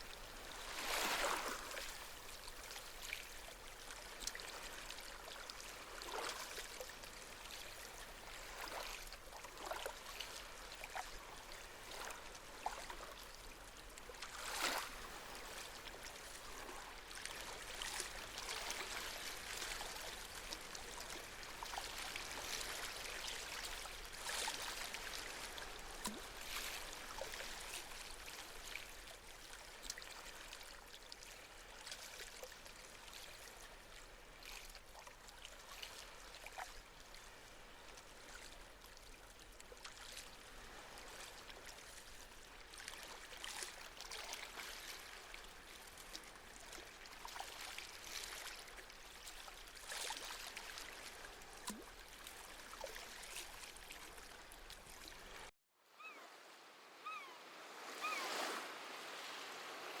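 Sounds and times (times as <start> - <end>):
small waves lapping at shore: 0.0 - 60.0
wash of surf: 0.4 - 2.0, 57.3 - 60.0
seabird calling: 55.9 - 56.4, 57.0 - 58.6.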